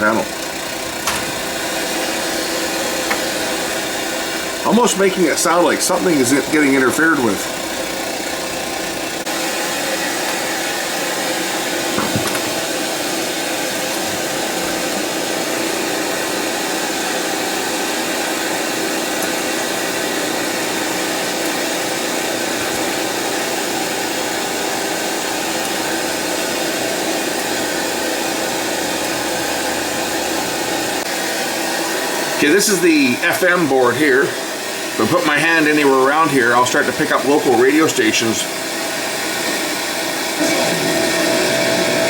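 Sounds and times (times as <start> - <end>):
steady loud hiss: 32.3 - 38.5.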